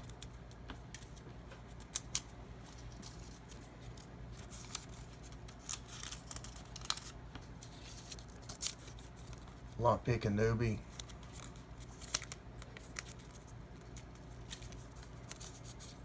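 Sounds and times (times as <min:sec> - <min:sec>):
scissors cutting paper: 0:01.0 - 0:09.5.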